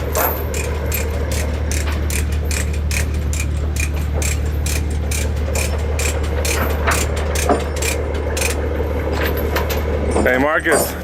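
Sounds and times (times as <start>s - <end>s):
steady low hum: 0.0s - 11.0s
mechanical ticking: 0.4s - 8.6s.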